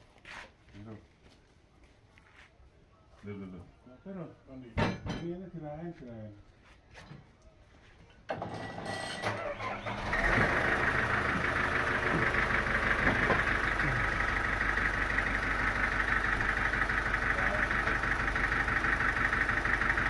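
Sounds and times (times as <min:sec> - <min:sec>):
sawmill engine whining: 0:08.4 - 0:20.0.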